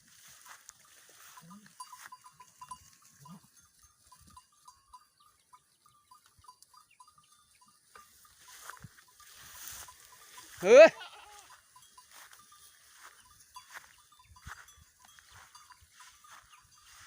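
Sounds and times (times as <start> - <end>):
goats bleating faintly: 10.3 - 11.6.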